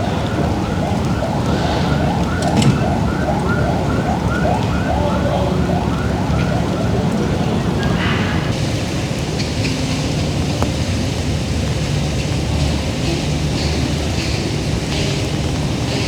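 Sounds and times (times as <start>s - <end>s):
siren yelping: 0.0s - 8.3s
steady rain: 0.0s - 16.0s
street noise: 0.0s - 16.0s.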